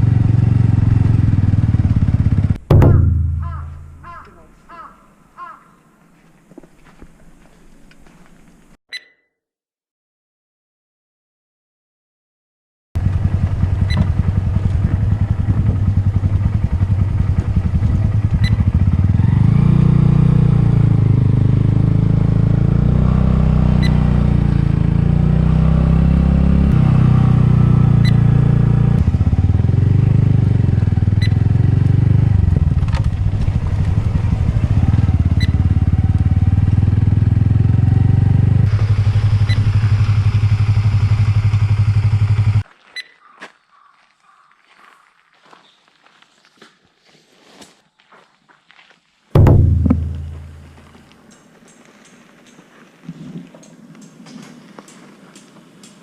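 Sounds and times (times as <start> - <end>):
motorcycle engine running: 0.0 - 4.2, 13.0 - 42.6, 49.4 - 51.1.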